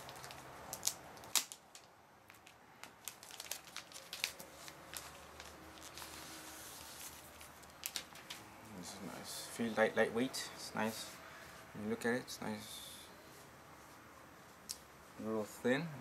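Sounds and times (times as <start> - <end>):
wrapping crinkling: 0.0 - 8.4.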